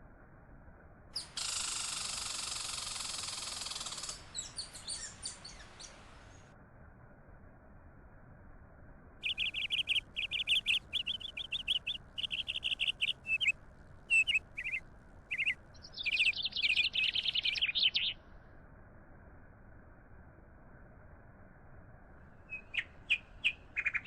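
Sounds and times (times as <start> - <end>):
songbird chirping: 1.2 - 6.5, 9.2 - 18.2, 22.4 - 24.0
faint steady hiss: 1.2 - 6.6.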